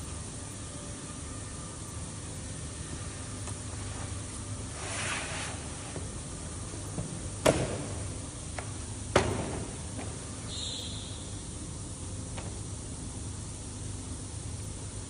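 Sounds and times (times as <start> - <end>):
background hiss: 0.0 - 15.0
sharp knocks: 9.1 - 9.7.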